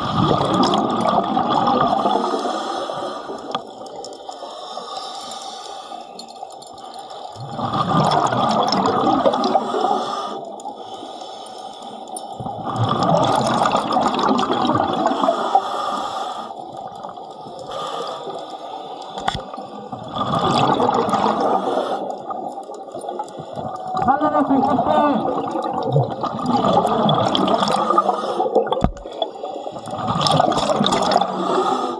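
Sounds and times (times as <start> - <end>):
diver exhaling bubbles: 0.0 - 2.7, 7.4 - 10.0, 12.4 - 15.6, 19.2 - 31.9
regulator inhale hiss: 2.2 - 3.5, 4.4 - 6.2, 15.3 - 16.6, 17.6 - 19.2.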